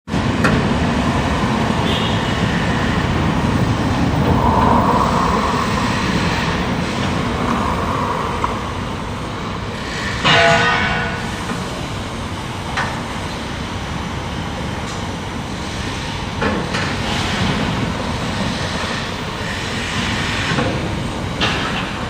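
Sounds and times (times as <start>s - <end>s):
heavy vehicle rumble: 0.1s - 13.8s.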